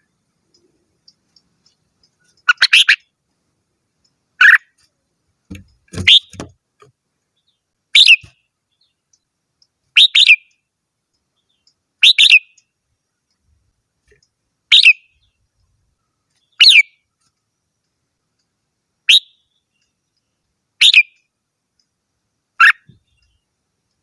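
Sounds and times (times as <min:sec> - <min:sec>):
bulbul singing: 0:00.0 - 0:03.2, 0:03.9 - 0:04.9, 0:05.5 - 0:06.6, 0:07.2 - 0:13.5, 0:14.1 - 0:17.1, 0:19.0 - 0:21.3.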